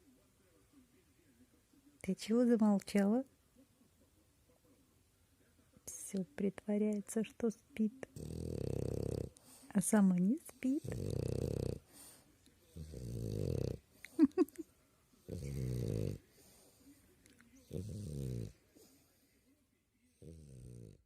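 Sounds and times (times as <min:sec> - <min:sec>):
pet snoring: 0:08.1 - 0:09.7, 0:10.4 - 0:13.9, 0:15.2 - 0:16.6, 0:17.6 - 0:19.0, 0:20.1 - 0:21.0.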